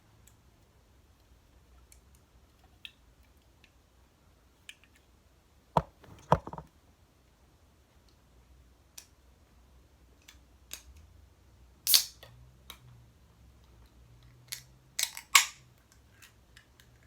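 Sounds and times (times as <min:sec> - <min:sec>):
can opening clicks: 0:11.9 - 0:12.3.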